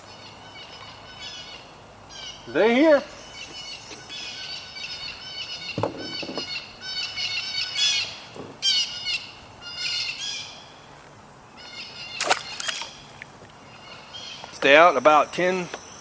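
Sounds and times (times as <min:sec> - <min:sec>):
birds chirping: 0:00.0 - 0:16.0
soft knocks: 0:05.8 - 0:06.5.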